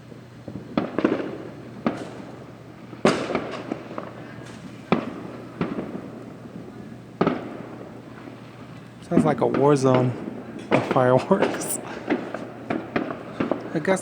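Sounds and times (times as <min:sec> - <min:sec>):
fireworks bangs: 0:00.0 - 0:14.0.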